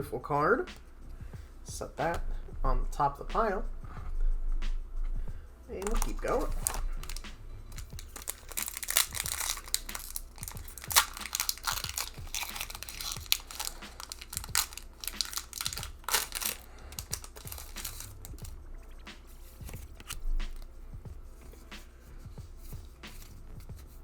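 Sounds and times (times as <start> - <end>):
foil wrapper tearing and crinkling: 5.8 - 18.6, 19.5 - 20.7.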